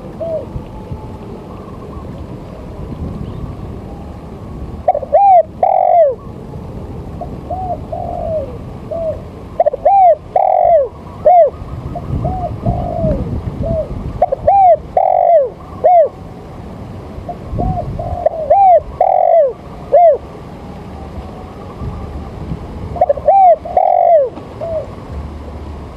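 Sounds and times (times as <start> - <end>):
bird calling: 0.0 - 0.6, 4.8 - 6.4, 7.2 - 16.2, 17.3 - 20.3, 23.0 - 25.0.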